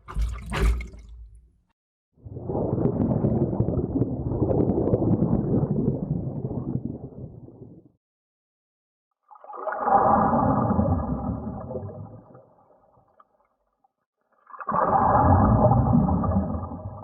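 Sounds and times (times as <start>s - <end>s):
underwater bubbling and gurgling: 2.2s - 7.9s, 9.3s - 13.5s, 14.3s - 17.0s.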